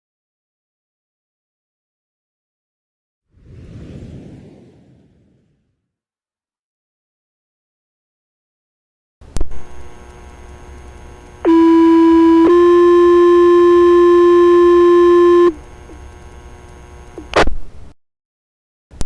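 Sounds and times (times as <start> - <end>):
radio click and hiss: 9.2 - 17.9
radio squelch crackle: 9.3 - 17.6
two-tone paging alert: 11.5 - 15.6.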